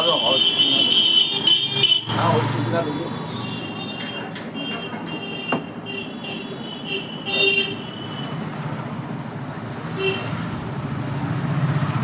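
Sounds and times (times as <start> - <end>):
rumble of passing vehicles: 0.0 - 12.0
vehicle horn toots: 10.0 - 10.4.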